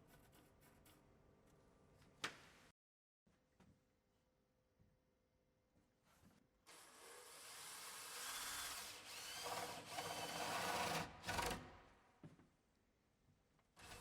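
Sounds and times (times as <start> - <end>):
power drill boring into wood: 6.9 - 11.6.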